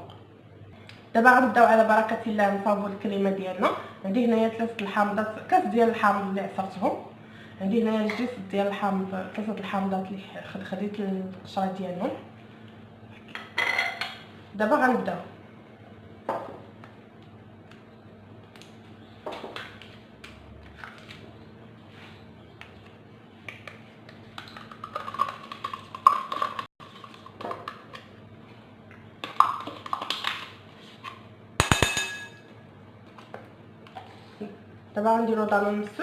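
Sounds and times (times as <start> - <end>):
dish clinking: 31.6 - 32.4
bowls and utensils knocking and scraping: 31.6 - 32.5.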